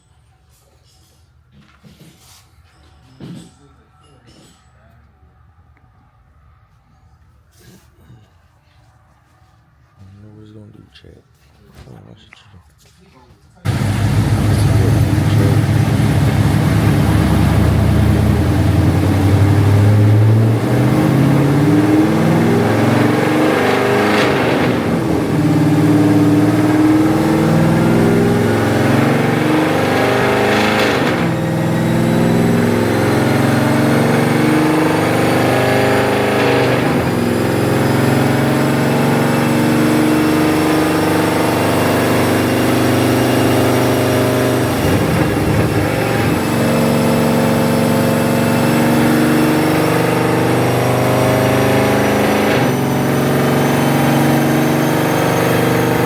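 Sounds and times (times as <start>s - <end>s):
car engine pulling through gears: 13.7s - 56.0s.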